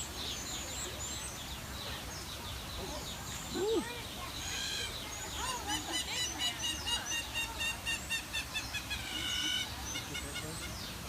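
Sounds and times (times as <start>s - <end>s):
birds calling: 0.0s - 11.0s
rapid sharp high bird calls: 3.0s - 11.0s.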